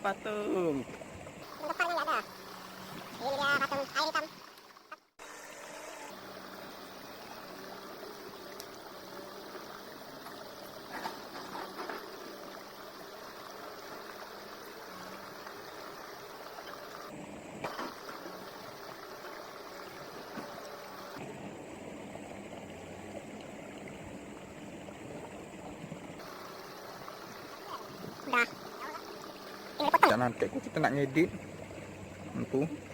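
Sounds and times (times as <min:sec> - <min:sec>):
river water flowing: 0:00.0 - 0:32.9.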